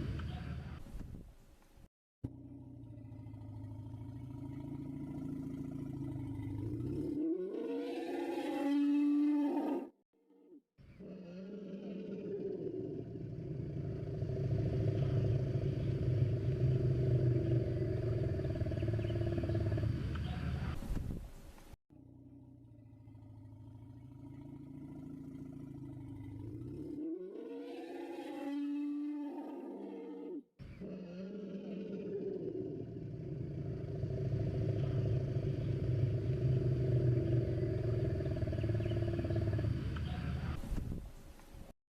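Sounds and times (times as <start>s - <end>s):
low rumbling animal call: 11.0s - 20.8s, 23.0s - 40.6s.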